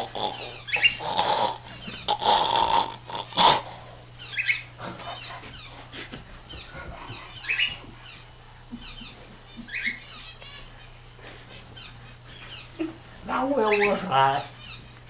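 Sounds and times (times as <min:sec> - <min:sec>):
low electrical hum: 0:00.0 - 0:15.0
small animal chirping and squeaking: 0:00.3 - 0:01.1, 0:04.2 - 0:05.7, 0:07.3 - 0:08.2, 0:08.8 - 0:10.9.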